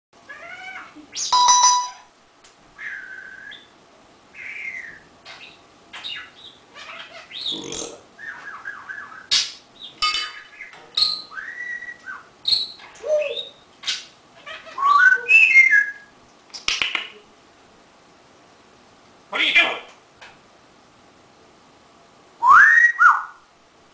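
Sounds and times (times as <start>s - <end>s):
parrot squawking: 4.3s - 9.6s, 10.3s - 16.0s, 22.4s - 23.4s
parrot whistling: 22.4s - 23.4s.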